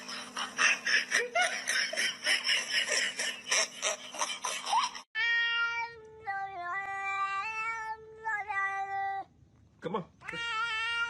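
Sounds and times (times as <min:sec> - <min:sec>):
person laughing: 0:00.0 - 0:05.0
cat meowing: 0:10.2 - 0:11.0.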